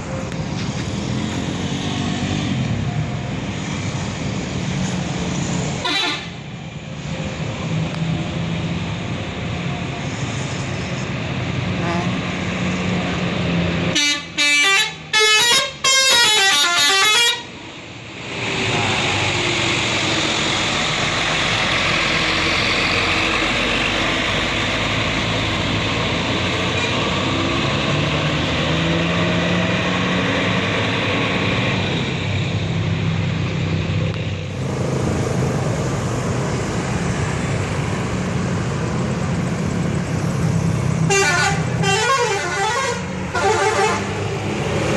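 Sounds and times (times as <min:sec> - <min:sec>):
bus engine running: 0:00.0 - 0:44.9
bus horn playing melody: 0:05.8 - 0:06.4, 0:11.8 - 0:12.2, 0:13.9 - 0:17.5, 0:41.1 - 0:44.3.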